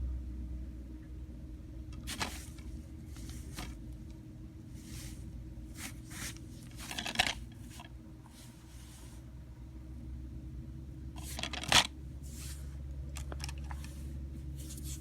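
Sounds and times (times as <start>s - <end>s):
steady low hum: 0.0s - 15.0s
rustling scraping noises: 2.0s - 3.9s, 4.7s - 9.2s, 11.2s - 15.0s.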